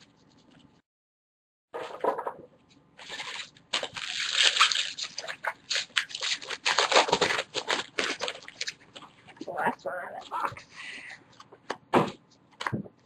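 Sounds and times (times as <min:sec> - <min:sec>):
wrappers crinkling and tearing: 0:03.0 - 0:09.1.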